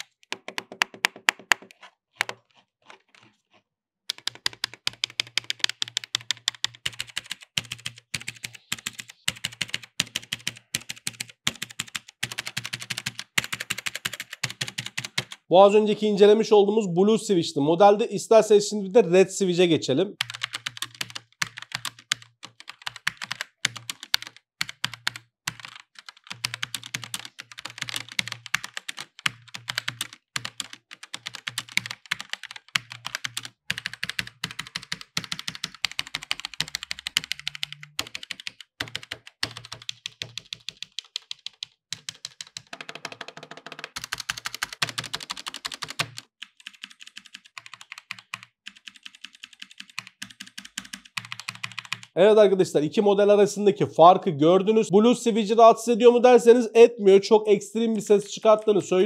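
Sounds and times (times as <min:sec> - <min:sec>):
mechanical keyboard typing: 0:00.0 - 0:02.4, 0:04.1 - 0:15.5, 0:20.2 - 0:52.2.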